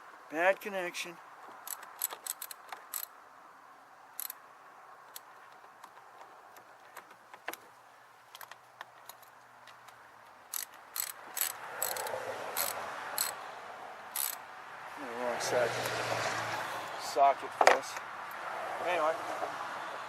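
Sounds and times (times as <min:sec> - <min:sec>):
socket ratchet clicking: 0:01.6 - 0:03.1, 0:04.2 - 0:04.4, 0:08.4 - 0:13.4, 0:14.1 - 0:14.4.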